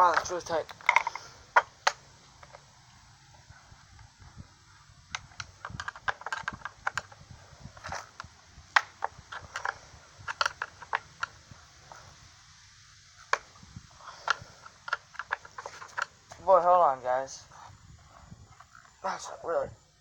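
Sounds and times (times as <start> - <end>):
hand tools clicking and tapping: 0.0 - 2.6, 5.2 - 7.2, 7.8 - 12.0, 13.2 - 16.4.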